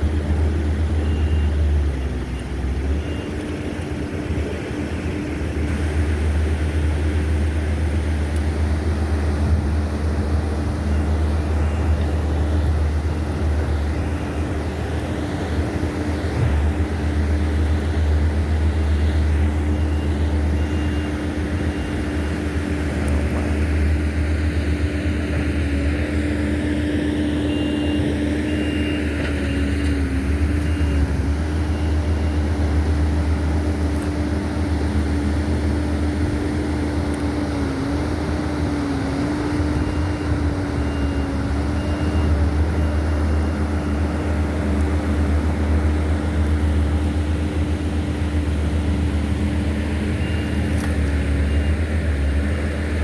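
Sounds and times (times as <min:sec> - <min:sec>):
car engine and road noise: 0:00.0 - 0:53.0.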